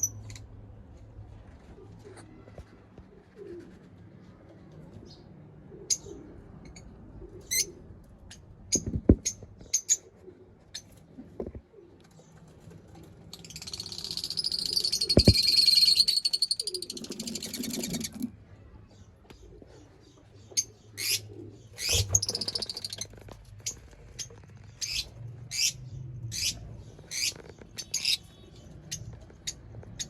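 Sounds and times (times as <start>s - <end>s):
lovebirds chirping: 13.4s - 30.0s
low thuds: 15.2s - 15.6s.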